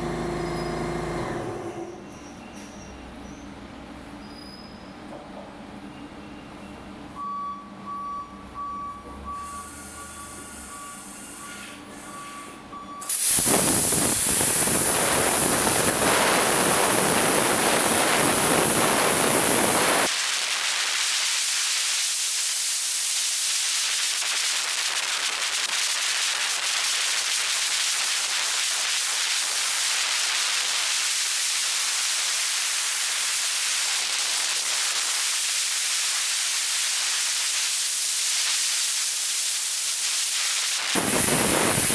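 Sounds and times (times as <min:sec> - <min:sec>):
steady air hiss: 0:13.0 - 0:25.4, 0:28.0 - 0:41.9
plasma cutter hissing and whining: 0:13.0 - 0:41.9.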